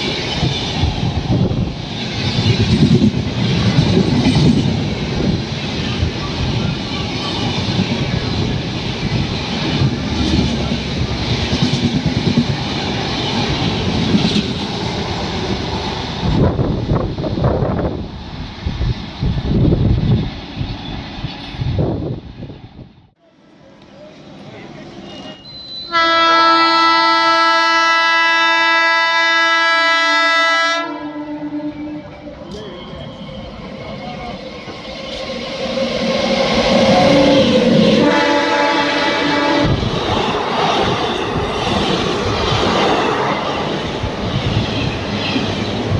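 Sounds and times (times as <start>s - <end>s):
train wheels rumbling on rails: 0.0s - 26.0s, 27.2s - 45.9s
locomotive air horn blast: 25.9s - 32.1s, 37.0s - 39.8s.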